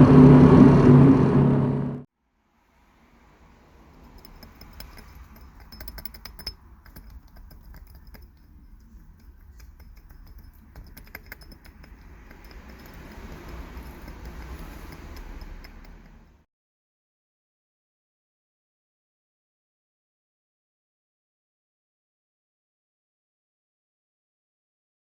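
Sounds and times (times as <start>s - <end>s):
low steady rumble: 2.7s - 16.4s
faint clicking and rattling: 3.7s - 16.4s.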